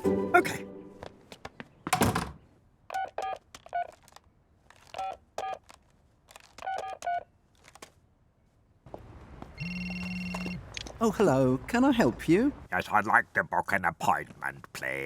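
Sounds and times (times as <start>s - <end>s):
phone keypad beeps: 9.6s - 10.6s.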